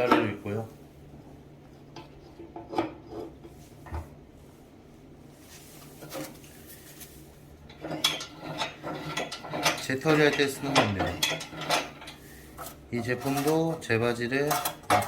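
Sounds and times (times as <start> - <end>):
metal clicks knocks and scrapes: 1.9 - 3.6, 7.7 - 13.8, 14.4 - 15.0.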